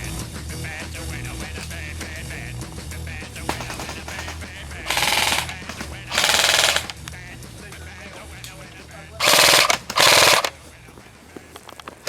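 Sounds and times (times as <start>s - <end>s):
airsoft gun full-auto bursts: 2.9s - 7.1s, 9.2s - 10.6s.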